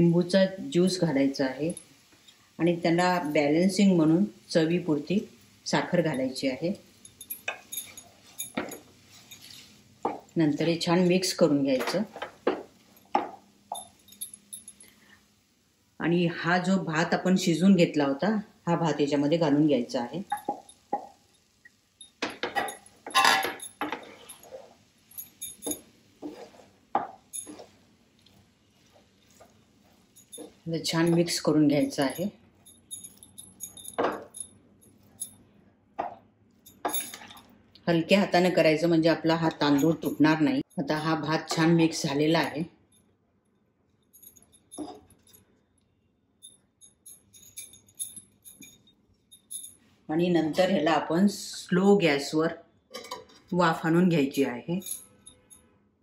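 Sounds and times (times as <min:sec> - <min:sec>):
spoon scraping a pan: 0:25.7 - 0:31.4.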